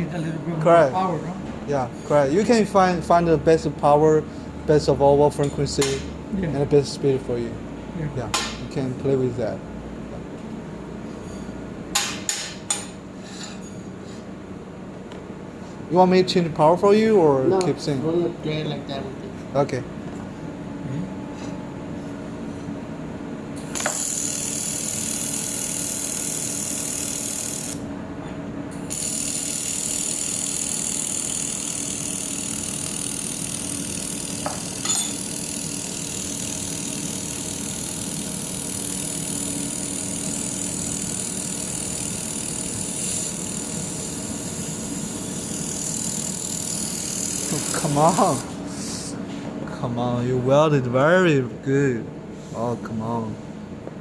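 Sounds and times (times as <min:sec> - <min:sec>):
machine humming: 0:22.0 - 0:54.0
laser welder hissing: 0:23.6 - 0:27.8, 0:28.9 - 0:49.1.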